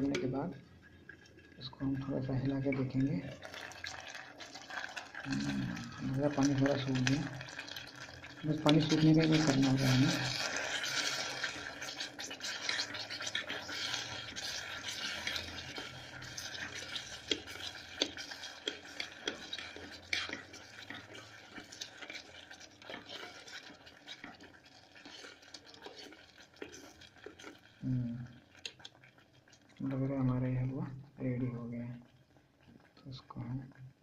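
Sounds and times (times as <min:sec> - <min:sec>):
spoon stirring and scraping pot: 0:00.0 - 0:30.7.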